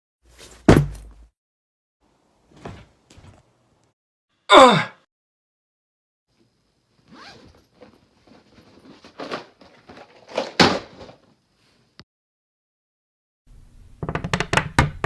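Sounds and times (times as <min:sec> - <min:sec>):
rustling and scraping: 0:07.1 - 0:11.8.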